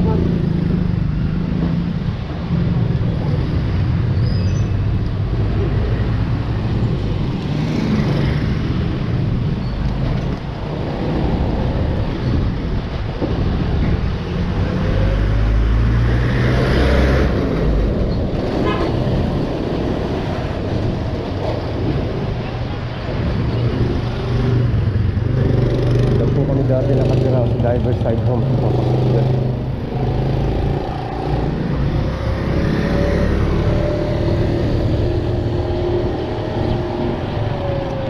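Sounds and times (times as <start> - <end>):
motor vehicle engines running: 0.0 - 38.0
road rumble: 0.0 - 38.0.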